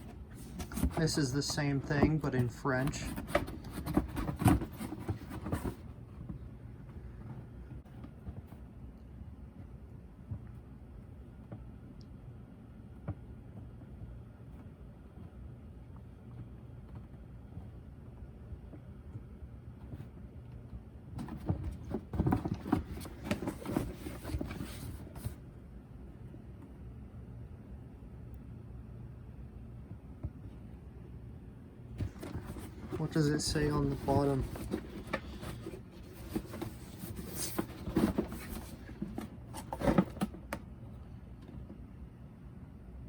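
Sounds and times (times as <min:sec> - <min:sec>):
cardboard box rustling: 0:00.0 - 0:06.5, 0:21.2 - 0:25.4, 0:32.0 - 0:40.7
cardboard box knocks and rustles: 0:02.9 - 0:06.4, 0:21.2 - 0:25.4.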